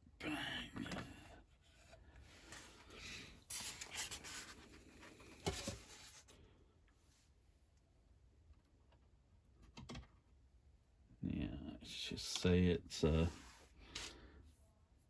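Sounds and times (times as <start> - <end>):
rubbing and scraping of packaging: 2.4 - 6.3.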